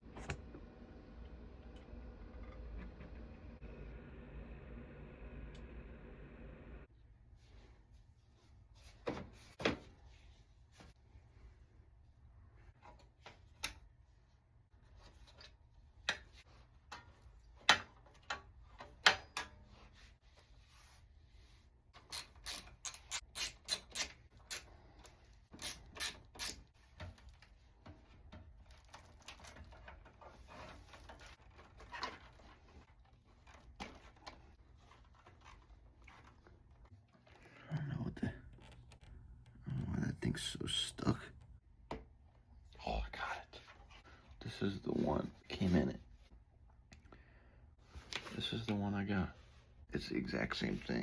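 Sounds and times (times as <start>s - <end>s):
clicks and knocks of computer parts: 16.0s - 19.6s.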